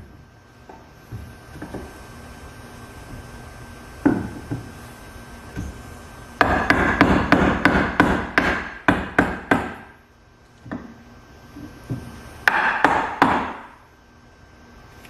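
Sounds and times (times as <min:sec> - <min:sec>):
hammer striking wood: 0:06.4 - 0:10.0, 0:11.9 - 0:13.8.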